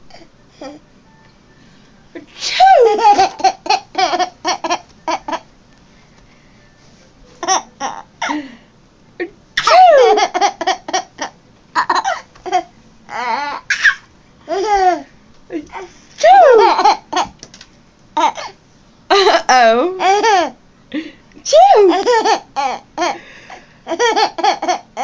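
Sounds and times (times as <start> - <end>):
baby giggling: 2.6 - 5.5, 7.4 - 8.4, 9.6 - 15.1, 15.8 - 17.4, 21.7 - 23.2.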